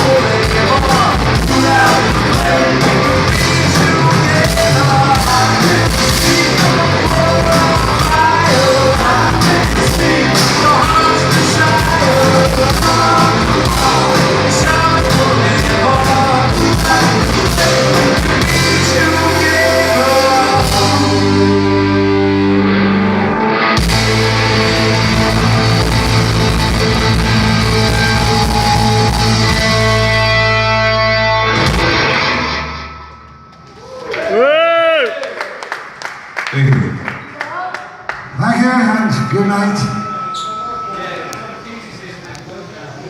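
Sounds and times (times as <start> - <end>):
person singing: 0.0 - 22.4
held guitar and bass chords: 0.0 - 34.0
drums: 0.0 - 34.3
electric guitar: 0.0 - 34.3
live rock band: 0.0 - 34.3.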